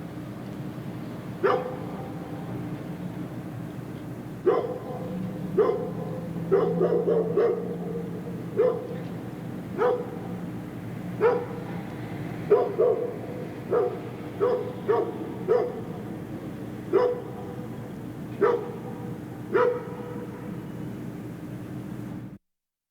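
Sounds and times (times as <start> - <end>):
steady low hum: 0.0 - 22.4
distant dogs barking: 1.4 - 2.7, 4.3 - 20.9.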